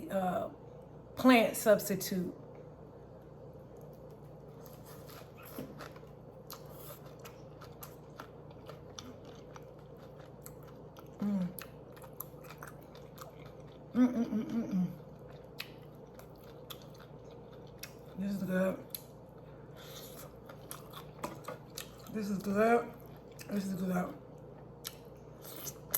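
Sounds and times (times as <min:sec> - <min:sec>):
chewing and biting food: 0:03.8 - 0:14.0, 0:14.9 - 0:18.2, 0:18.9 - 0:22.2.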